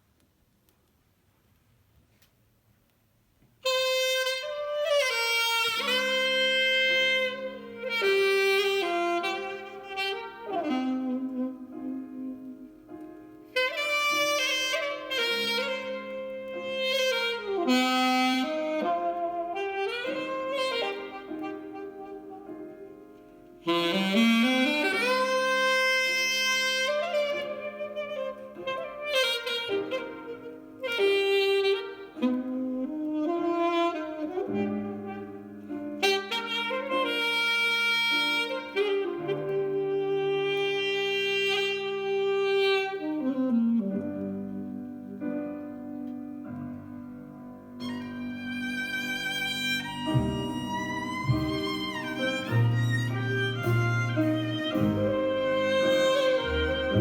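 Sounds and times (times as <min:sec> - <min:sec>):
saxophone music: 0:03.6 - 0:57.0.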